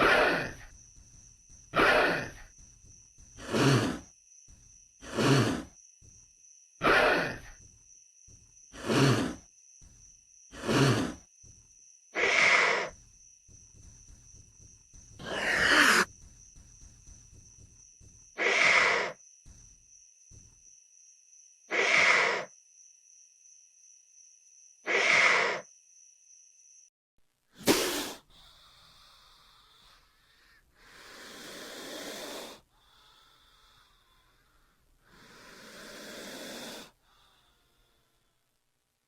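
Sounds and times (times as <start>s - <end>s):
creature calls: 0.0s - 0.6s, 1.8s - 2.4s, 6.8s - 7.5s, 12.2s - 12.9s, 15.2s - 16.1s, 21.7s - 22.5s, 24.9s - 25.6s.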